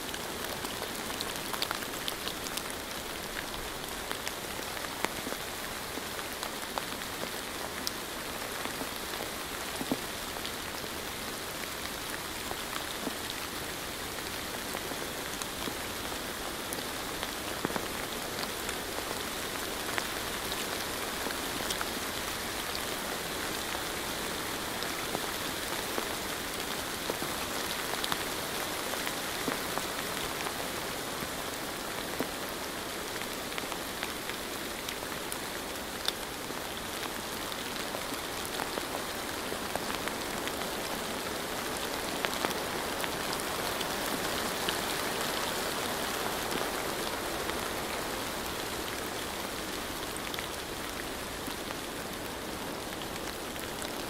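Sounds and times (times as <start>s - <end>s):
steady rain pattering: 0.0s - 54.0s.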